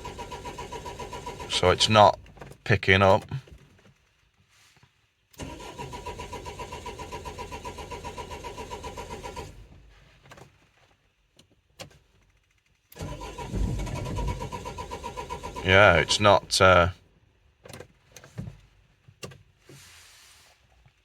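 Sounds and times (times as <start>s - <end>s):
starter motor cranking diesel engine: 0.0s - 2.3s, 5.3s - 9.8s, 12.9s - 16.9s.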